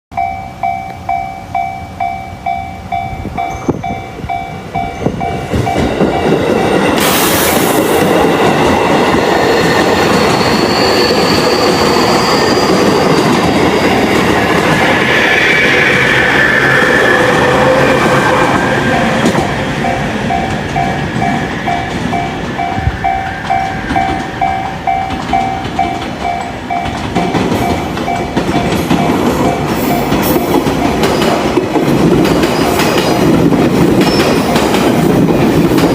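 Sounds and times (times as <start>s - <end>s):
level crossing warning bell: 0.1s - 6.7s, 13.7s - 14.4s, 18.8s - 31.1s
train rumbling over crossing: 0.1s - 35.9s
train wheel clatter: 4.8s - 35.9s.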